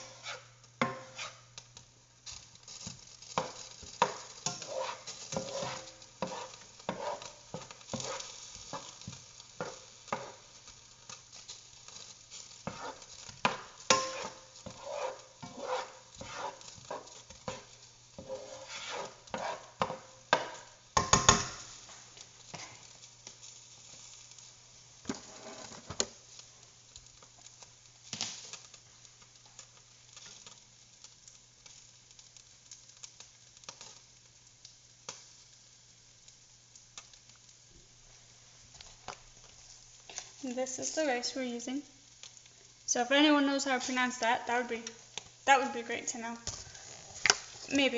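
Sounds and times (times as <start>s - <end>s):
utensil scraping a pan: 0.0s - 1.5s, 3.3s - 10.5s, 12.3s - 21.7s, 25.0s - 26.0s
onions sizzling: 0.0s - 47.9s.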